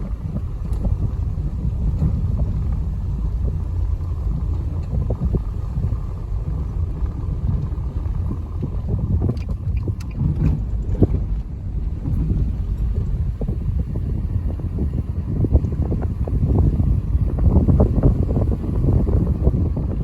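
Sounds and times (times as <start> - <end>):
car engine and tyre rumble: 0.0 - 20.0
light clicks and rattles: 6.5 - 13.6.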